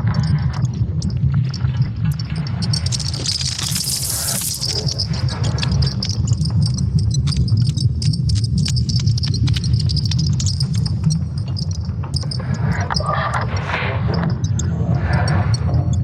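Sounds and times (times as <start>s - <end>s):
high-pitched crackle: 2.3s - 13.8s
sharp clicks: 2.7s - 12.3s.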